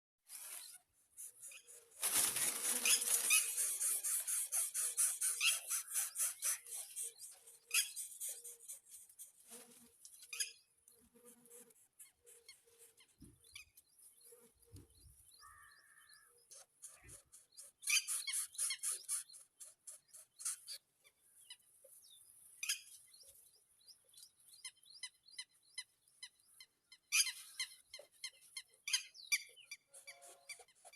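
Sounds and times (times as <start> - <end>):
bird high-pitched squeaky chirps: 0.4 - 9.2, 12.0 - 20.8, 24.6 - 30.9.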